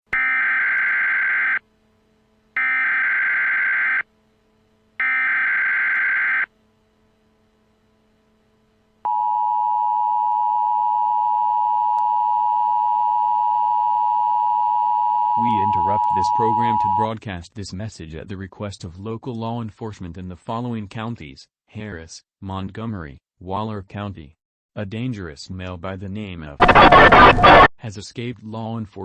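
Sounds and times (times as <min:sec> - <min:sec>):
steady two-tone attention signal: 0:15.2 - 0:17.1
digital data bursts: 0:26.6 - 0:27.7.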